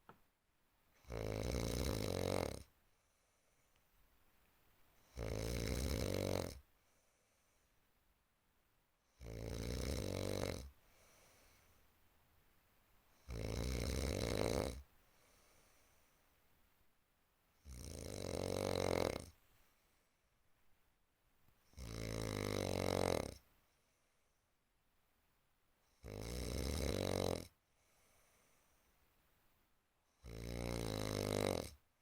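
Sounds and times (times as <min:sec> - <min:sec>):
loud snoring: 0:01.0 - 0:02.7, 0:05.0 - 0:06.6, 0:09.1 - 0:10.7, 0:13.2 - 0:14.8, 0:17.6 - 0:19.4, 0:21.7 - 0:23.4, 0:26.0 - 0:27.6, 0:30.2 - 0:31.8.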